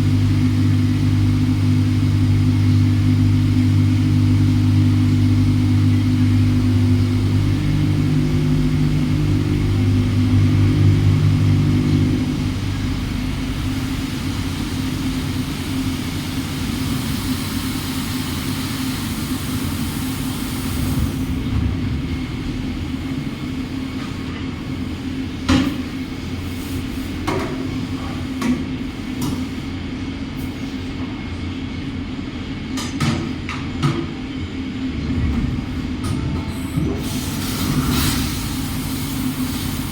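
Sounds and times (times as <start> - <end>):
machine humming: 0.0 - 25.4.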